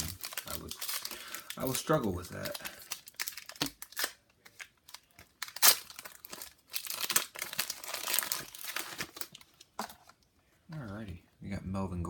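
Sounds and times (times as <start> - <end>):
wrapper crinkling and tearing: 0.0 - 9.8.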